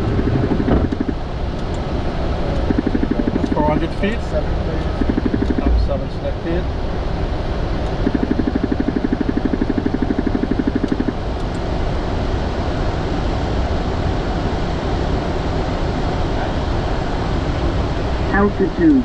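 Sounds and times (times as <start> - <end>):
rapidly pulsing electronic tone: 0.0 - 1.3, 2.4 - 6.6, 7.9 - 11.5
jet engine and airflow noise: 0.0 - 19.0.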